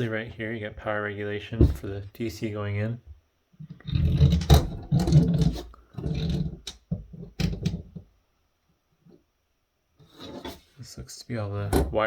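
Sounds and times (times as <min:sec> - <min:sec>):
circuit board rubbing and scraping: 0:03.7 - 0:06.7, 0:10.0 - 0:10.7.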